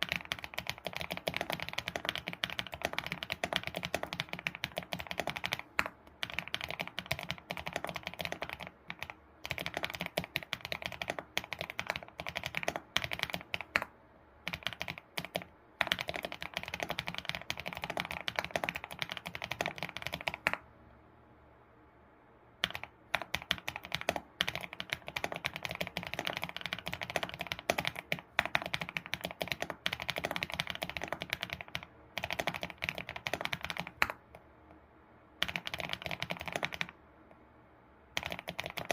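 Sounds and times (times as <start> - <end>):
keyboard typing clicks: 0.0 - 13.9, 14.5 - 20.6, 22.6 - 34.4, 35.4 - 37.0, 38.2 - 38.9.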